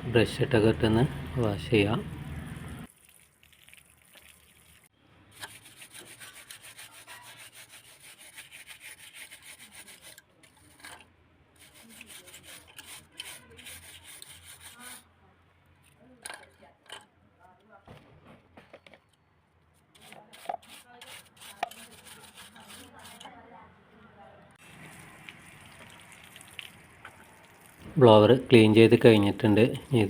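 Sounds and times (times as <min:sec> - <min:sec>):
brush scrubbing blower wheel: 0:05.4 - 0:11.0, 0:11.6 - 0:15.0, 0:20.0 - 0:23.3.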